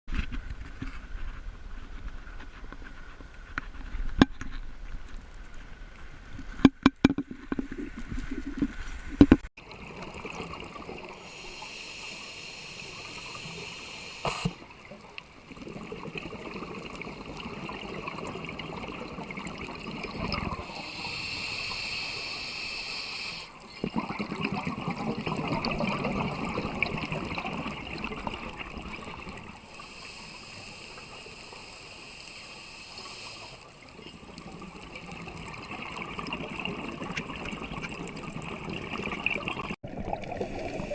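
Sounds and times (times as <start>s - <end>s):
exhaled bubbles gurgling: 9.6s - 11.8s, 12.7s - 22.3s, 23.6s - 30.0s, 33.7s - 40.9s
regulator inhalation hiss: 11.3s - 14.6s, 20.7s - 23.6s, 29.7s - 33.7s.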